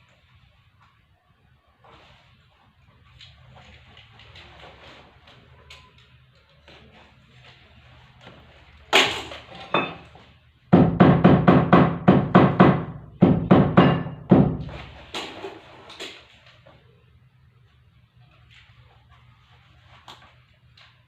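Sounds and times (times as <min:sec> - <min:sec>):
hammer blows ringing: 0:10.8 - 0:14.8.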